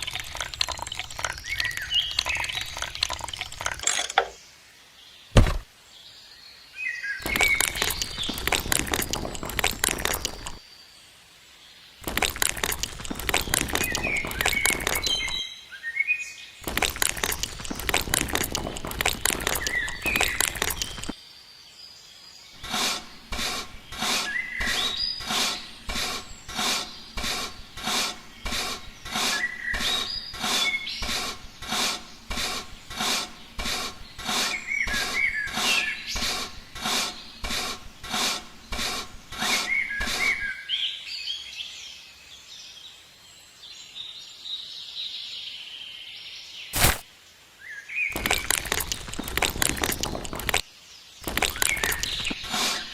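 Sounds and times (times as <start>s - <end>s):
birds chirping: 0.0s - 10.7s, 11.9s - 21.2s, 22.4s - 42.1s, 48.0s - 52.9s
tool scraping and rasping: 12.0s - 15.4s, 16.6s - 21.2s, 22.6s - 40.5s, 46.8s - 47.0s, 48.2s - 50.6s, 51.2s - 52.9s.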